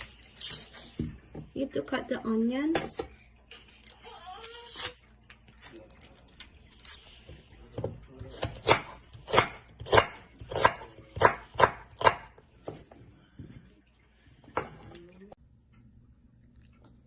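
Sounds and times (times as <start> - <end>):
knife chopping onion on board: 7.7 - 13.0.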